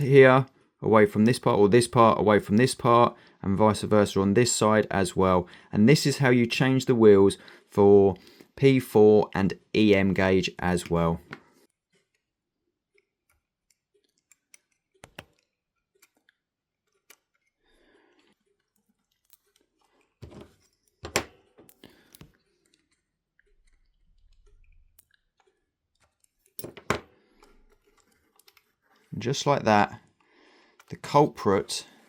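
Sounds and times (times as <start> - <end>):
small clicks of model parts: 12.9 - 17.6, 21.7 - 26.6, 27.3 - 29.1.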